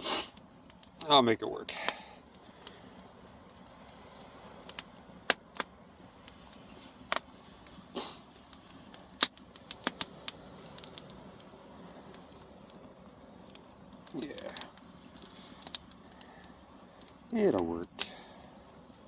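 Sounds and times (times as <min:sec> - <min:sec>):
campfire crackling: 0:00.0 - 0:19.0
low steady fire hiss: 0:00.0 - 0:19.0
sharp fire pops: 0:01.7 - 0:19.0.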